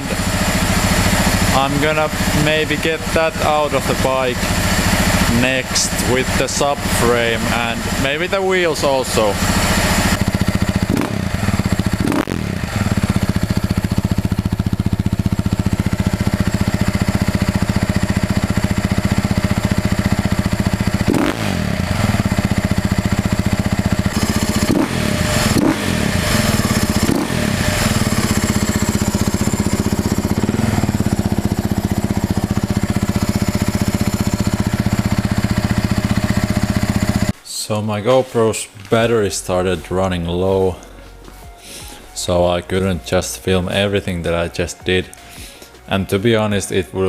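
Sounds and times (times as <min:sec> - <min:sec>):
dirt bike engine idling: 0:00.0 - 0:37.4
engine throttle revs: 0:00.0 - 0:37.4.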